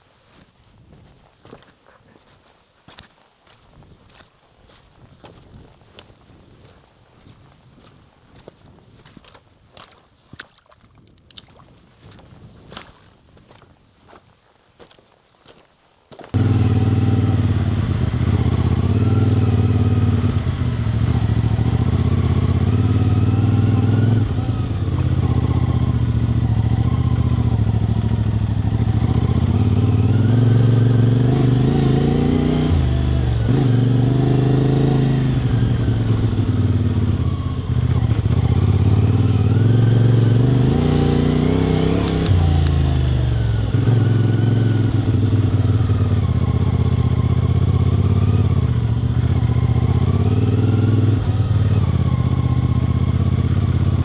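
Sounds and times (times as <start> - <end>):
vehicle engine revving: 16.4 - 54.0.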